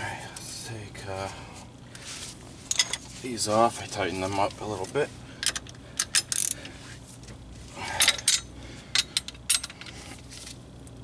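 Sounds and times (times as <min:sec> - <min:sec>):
metal parts clinking: 0:02.7 - 0:03.0, 0:05.4 - 0:06.6, 0:08.0 - 0:10.0.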